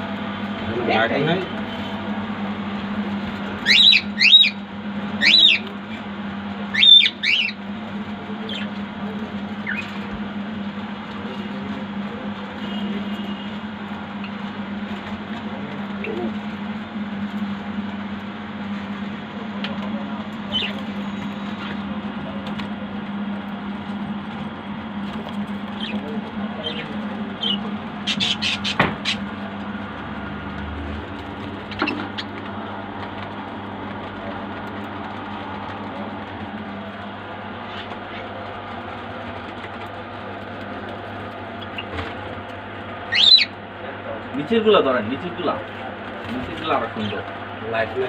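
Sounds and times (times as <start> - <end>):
low background hum: 0.0 - 48.0
faint bird calls: 6.7 - 7.6, 43.0 - 43.5.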